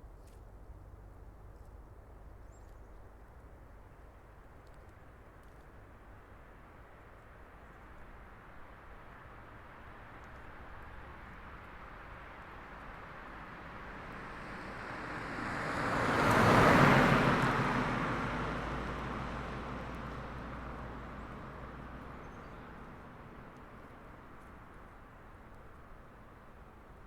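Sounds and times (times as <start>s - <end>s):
vehicle driving past: 14.2s - 21.8s.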